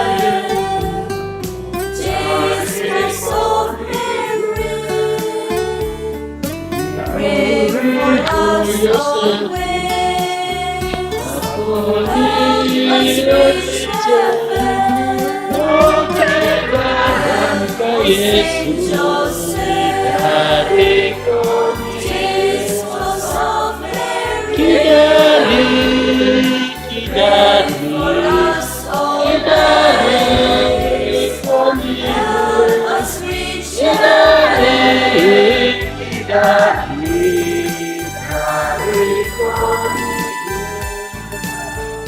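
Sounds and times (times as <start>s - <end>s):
church choir singing a hymn: 0.0s - 41.2s
steady beat: 7.0s - 9.9s, 10.9s - 41.0s.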